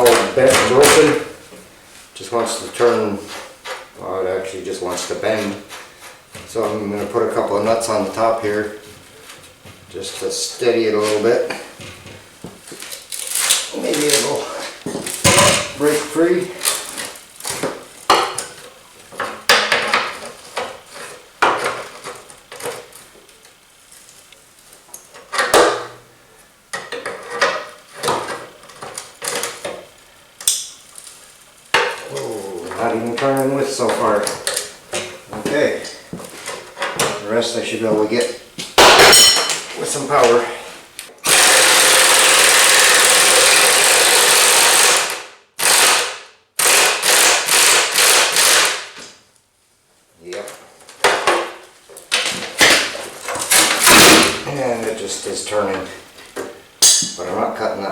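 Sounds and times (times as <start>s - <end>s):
impact wrench hammering on bolt: 56.8s - 57.2s.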